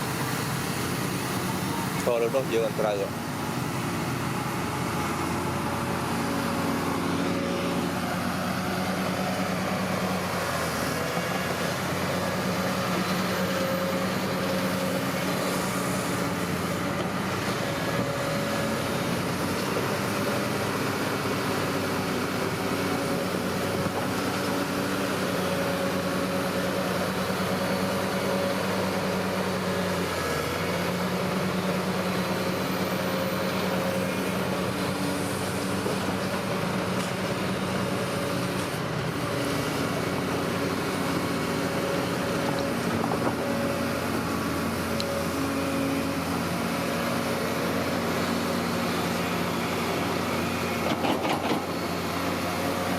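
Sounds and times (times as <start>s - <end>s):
bulldozer diesel engine running: 0.0s - 52.9s.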